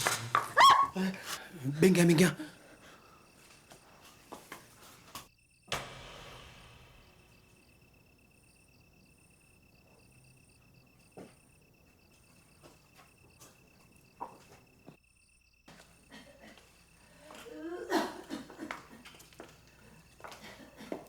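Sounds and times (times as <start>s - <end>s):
crickets chirping: 0.0s - 21.0s
sharp knock: 5.7s - 7.9s.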